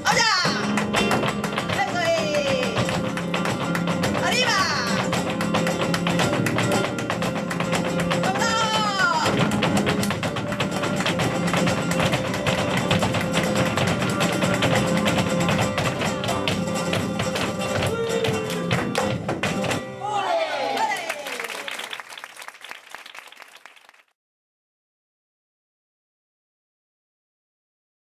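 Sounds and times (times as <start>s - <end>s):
flamenco guitar playing: 0.0s - 20.2s
person calling out: 8.3s - 9.4s.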